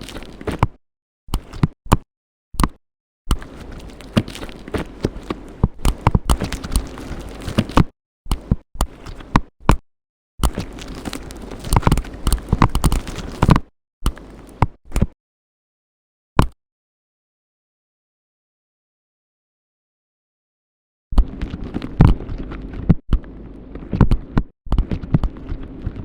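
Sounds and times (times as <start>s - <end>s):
slime clicking and squelching: 10.4s - 14.6s.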